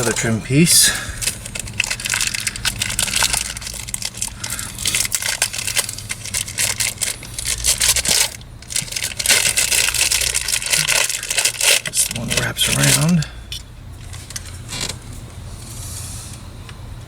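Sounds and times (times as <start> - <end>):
plastic trim crackling and clicking: 1.2 - 13.6.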